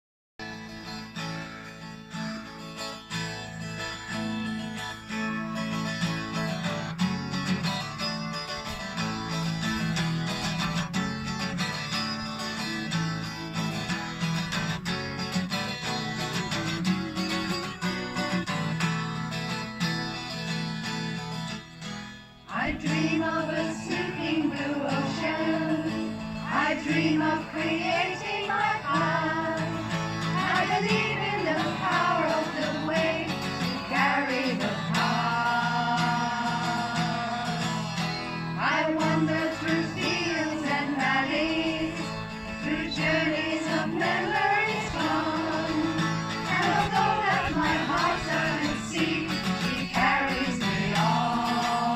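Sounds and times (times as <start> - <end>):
acoustic guitar strumming: 0.4 - 51.9
person singing: 22.5 - 37.8, 38.6 - 51.9.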